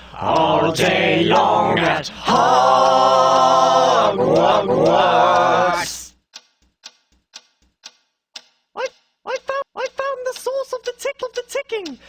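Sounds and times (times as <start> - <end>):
voices singing in harmony: 0.0 - 6.1
quiet ticking: 0.0 - 12.0.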